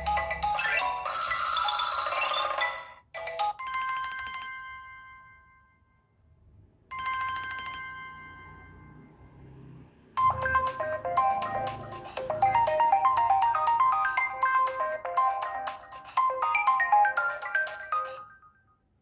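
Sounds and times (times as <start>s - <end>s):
ringtone tune: 0.0s - 4.3s, 10.2s - 18.7s
bell-like chimes: 7.0s - 9.6s.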